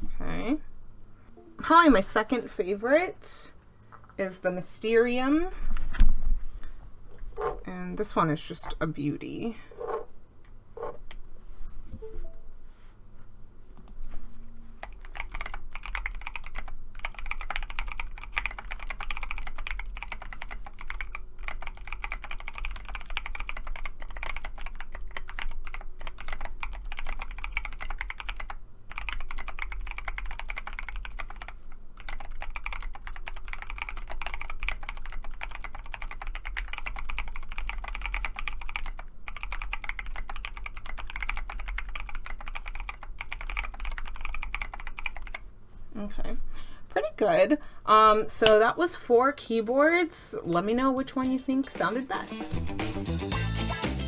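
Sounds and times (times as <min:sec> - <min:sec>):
typing on mechanical keyboard: 0:14.8 - 0:45.4.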